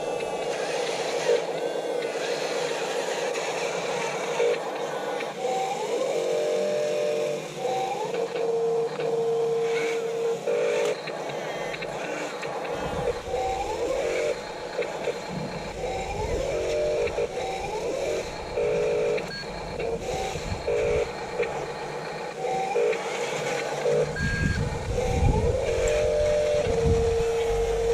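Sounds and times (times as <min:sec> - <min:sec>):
small electric motors whining: 0:00.0 - 0:27.9.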